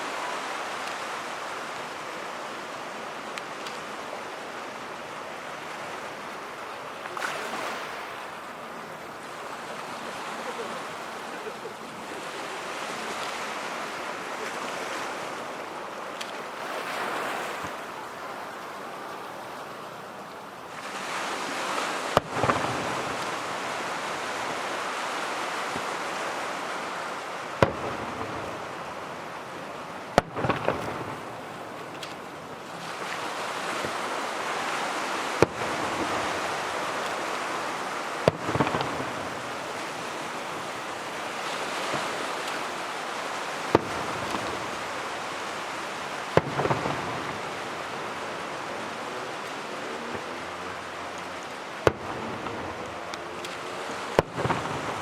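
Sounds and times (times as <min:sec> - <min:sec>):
firework crackling: 0:20.8 - 0:51.0, 0:51.6 - 0:55.0
firework shells bursting: 0:22.0 - 0:24.6, 0:27.4 - 0:29.4, 0:30.1 - 0:32.3, 0:33.0 - 0:47.9, 0:54.2 - 0:55.0.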